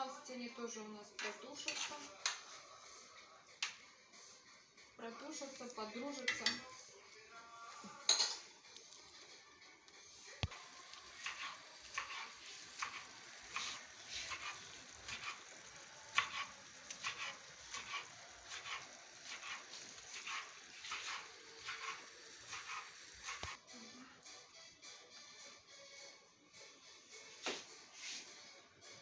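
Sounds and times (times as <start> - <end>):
spoon scraping a pan: 1.2 - 2.4, 11.0 - 23.6
food sizzling in a pan: 1.2 - 23.6.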